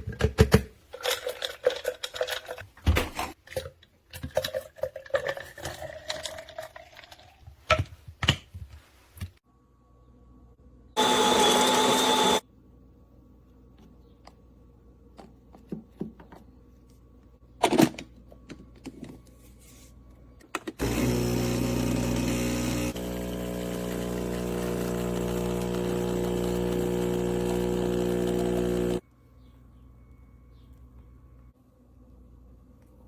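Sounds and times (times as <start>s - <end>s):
espresso machine pump buzzing: 11.0s - 12.4s, 20.8s - 29.0s.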